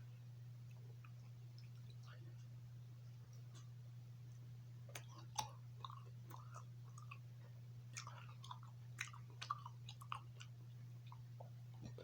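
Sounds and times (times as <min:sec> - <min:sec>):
steady low hum: 0:00.0 - 0:12.0
mouth clicks and smacks: 0:04.9 - 0:07.2
person chewing: 0:04.9 - 0:12.0.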